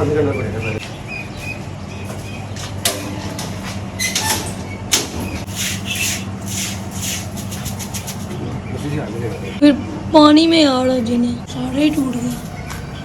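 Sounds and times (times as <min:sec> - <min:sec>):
steady low hum: 0:00.0 - 0:13.0
rustling scraping strokes: 0:05.3 - 0:08.4.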